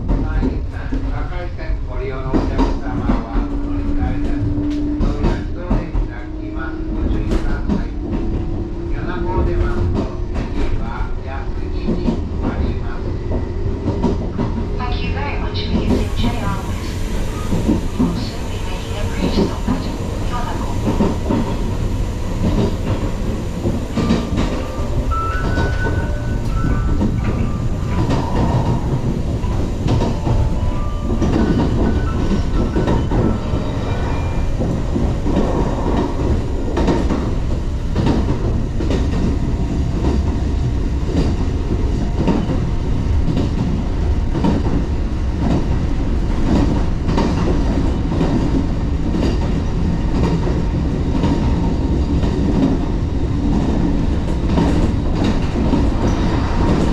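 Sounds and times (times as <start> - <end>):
train running rumble: 0.0 - 56.9.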